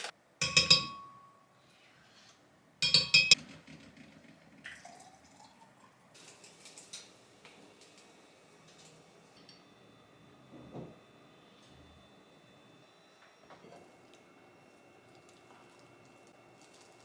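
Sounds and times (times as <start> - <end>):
glassware clinking: 0.4 - 1.3, 2.8 - 3.4.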